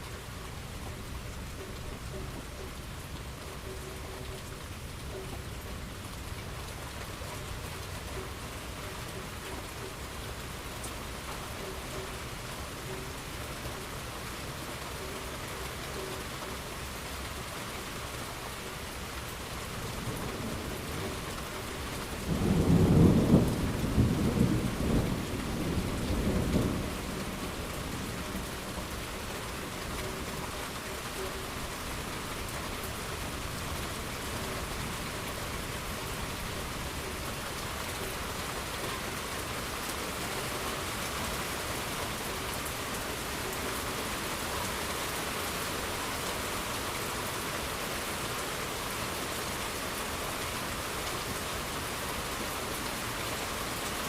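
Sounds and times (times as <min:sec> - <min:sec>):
steady rain falling: 0:00.0 - 0:54.0
thunder rumbling: 0:22.2 - 0:28.4.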